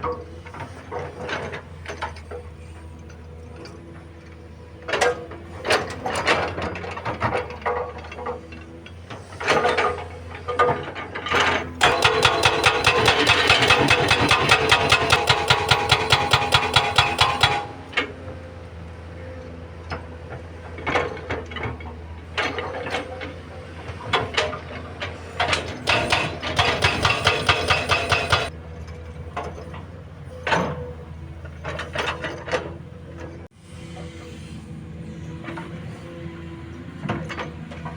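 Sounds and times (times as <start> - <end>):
knocks and rock clatter: 0.0 - 18.2, 19.9 - 29.9
hydraulic rock breaker hammering rock: 0.0 - 18.5, 20.2 - 28.6
diesel engine running: 11.6 - 19.3, 21.6 - 32.0.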